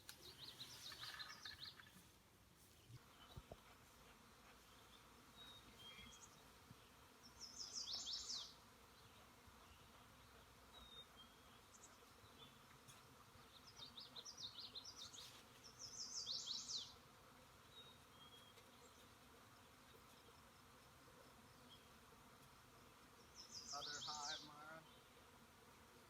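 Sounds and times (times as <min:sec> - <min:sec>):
honeybee swarm buzzing: 0:03.0 - 0:26.0.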